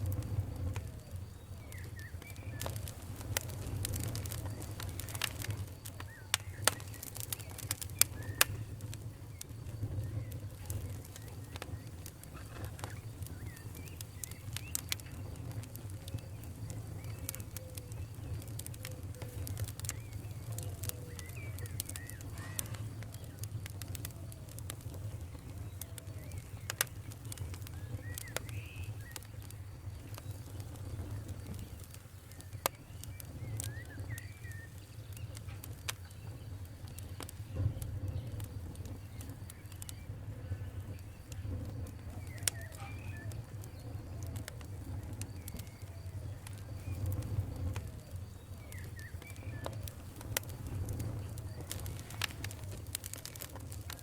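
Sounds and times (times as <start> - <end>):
fire pops and snaps: 0.0 - 54.0
low fire rumble: 0.0 - 54.0
wood fire crackling: 0.0 - 54.0.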